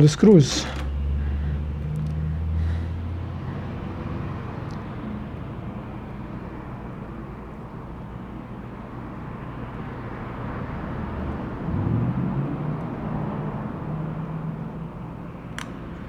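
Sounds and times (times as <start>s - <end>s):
road traffic rumble: 0.0s - 16.0s
vehicle engine rising in pitch: 0.9s - 6.2s, 9.8s - 15.3s.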